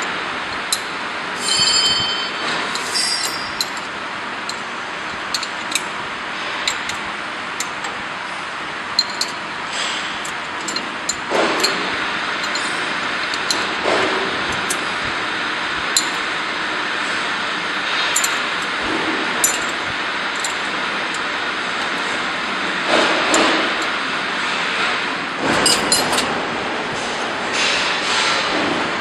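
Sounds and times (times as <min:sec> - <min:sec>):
steady mechanical noise: 0:00.0 - 0:29.0
brief metallic ring: 0:01.4 - 0:03.5
sharp metallic clinks and taps: 0:01.4 - 0:03.9, 0:04.5 - 0:05.8, 0:09.0 - 0:09.4, 0:10.2 - 0:11.8, 0:12.4 - 0:13.7, 0:15.9 - 0:16.3, 0:18.2 - 0:18.7, 0:19.4 - 0:19.8, 0:25.5 - 0:26.3.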